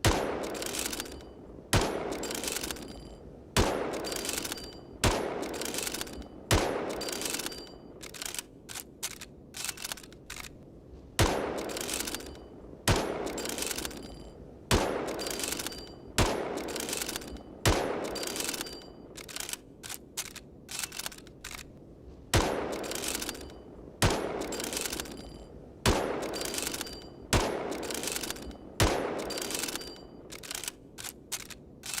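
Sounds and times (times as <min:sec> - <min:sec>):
rifle shots echoing: 0:00.0 - 0:08.3, 0:11.2 - 0:18.9, 0:22.3 - 0:30.8
rifle bolt clicking: 0:00.1 - 0:01.2, 0:06.9 - 0:10.6, 0:13.2 - 0:14.2, 0:15.0 - 0:21.7, 0:26.2 - 0:32.0.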